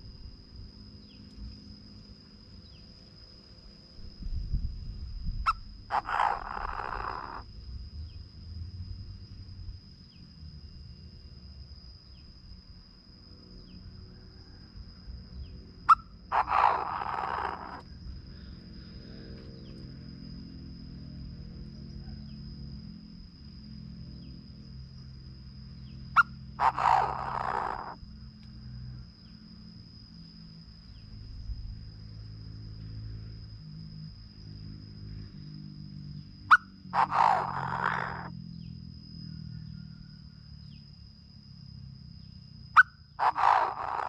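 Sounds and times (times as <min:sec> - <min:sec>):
bird harsh call: 0:05.9 - 0:07.4, 0:15.9 - 0:17.8, 0:26.2 - 0:28.0, 0:36.5 - 0:38.3, 0:42.8 - 0:44.0.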